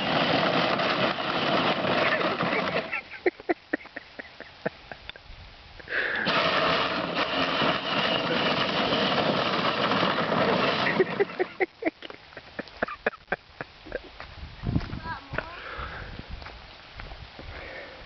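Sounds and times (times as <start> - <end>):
electric motors whirring: 6.2 - 11.4.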